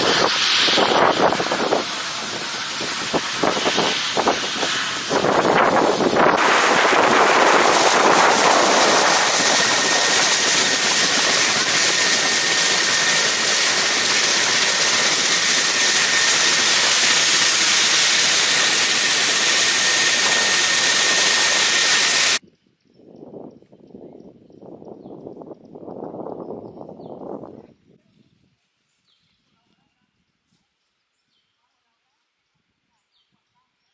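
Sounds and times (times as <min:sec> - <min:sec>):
helicopter engines and rotor: 0:00.0 - 0:22.4.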